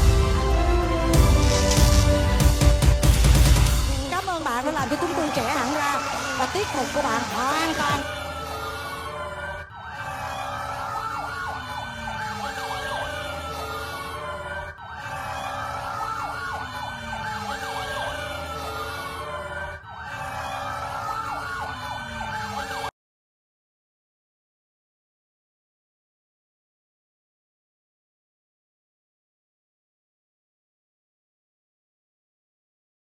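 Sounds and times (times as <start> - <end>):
emergency vehicle sirens wailing: 4.1 - 22.9.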